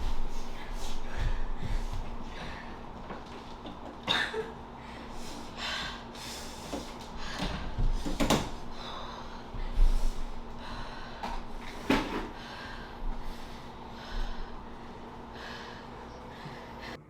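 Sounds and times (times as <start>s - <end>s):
gasping breaths: 4.7s - 17.0s.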